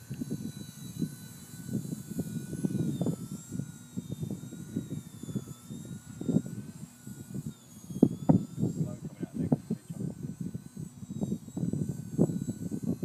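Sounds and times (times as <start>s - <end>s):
toy helicopter motor whining: 0.0s - 13.0s
wind buffeting microphone: 0.0s - 13.0s.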